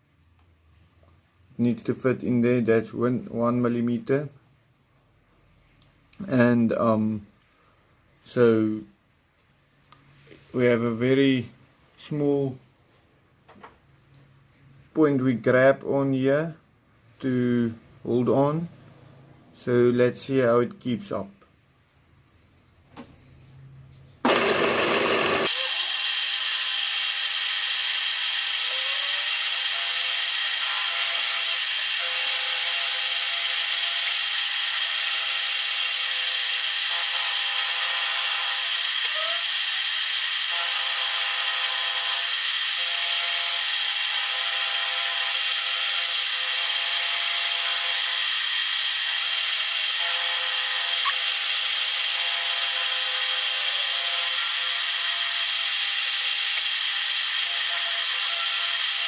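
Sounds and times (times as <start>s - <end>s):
power tool cutting steel: 24.2s - 59.0s.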